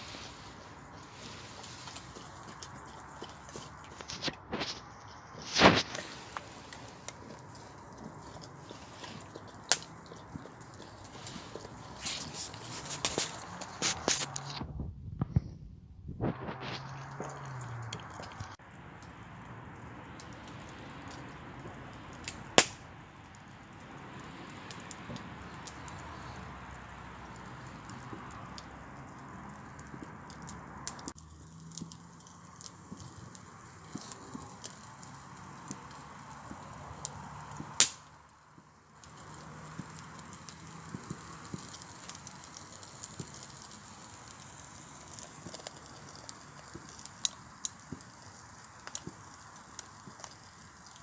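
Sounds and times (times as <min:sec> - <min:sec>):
campfire crackling and popping: 0:00.0 - 0:51.0
sharp crack: 0:05.4 - 0:07.8, 0:22.2 - 0:22.9, 0:37.6 - 0:38.1.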